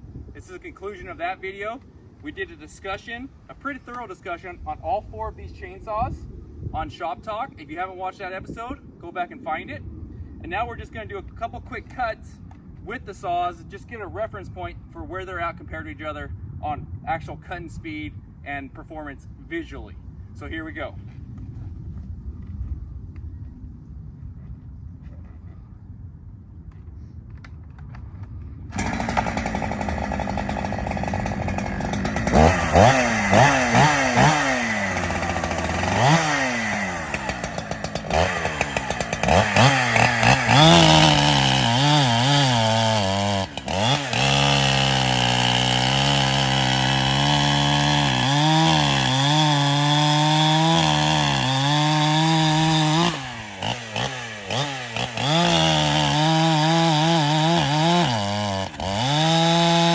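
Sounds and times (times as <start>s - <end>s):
chainsaw revving and cutting wood: 28.7s - 59.9s.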